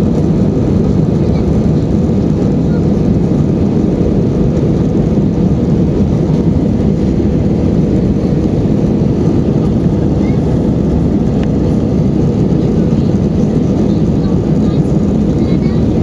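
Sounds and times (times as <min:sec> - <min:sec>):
airplane engines rumbling: 0:00.0 - 0:16.0.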